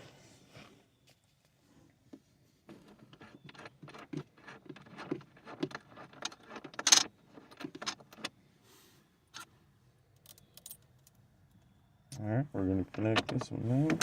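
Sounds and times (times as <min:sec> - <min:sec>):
metal parts clicking and rattling: 0:02.8 - 0:08.3, 0:12.9 - 0:14.0.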